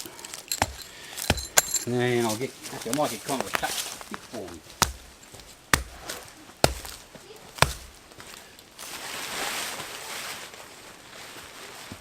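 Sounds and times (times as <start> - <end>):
rustling scrape: 8.8 - 12.0.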